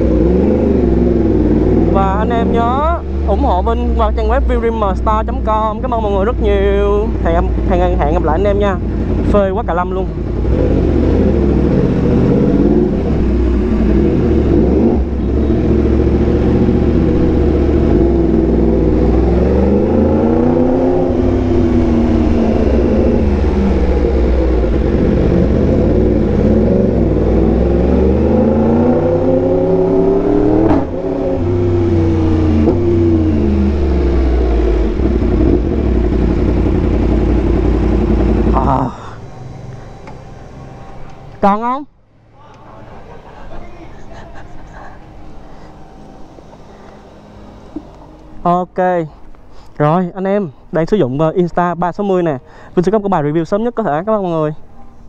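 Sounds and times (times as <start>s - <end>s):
motorcycle engine revving: 0.0s - 41.6s.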